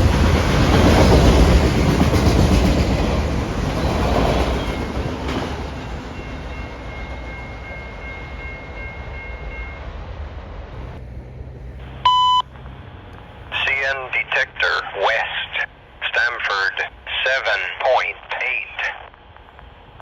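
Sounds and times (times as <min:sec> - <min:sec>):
freight train wheels clacking: 0:00.0 - 0:09.2
short electronic beep: 0:12.1 - 0:12.4.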